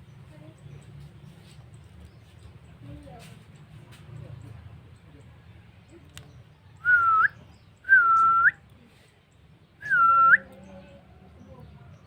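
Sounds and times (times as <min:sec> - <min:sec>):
person whistling: 0:06.8 - 0:08.6, 0:09.8 - 0:10.4.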